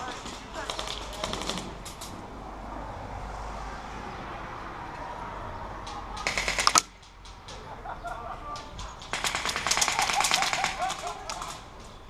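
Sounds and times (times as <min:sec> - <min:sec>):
airsoft gun firing full auto: 0:06.2 - 0:06.9, 0:09.1 - 0:11.6.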